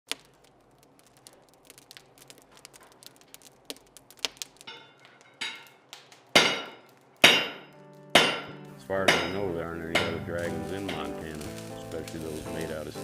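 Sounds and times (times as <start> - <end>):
hammer striking steel: 4.7 - 11.2.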